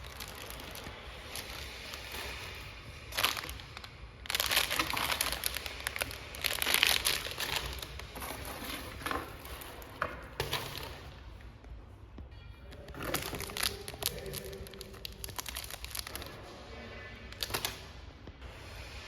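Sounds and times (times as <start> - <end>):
packaging crinkling and rustling: 0.0 - 11.4, 12.7 - 16.4, 17.3 - 17.9.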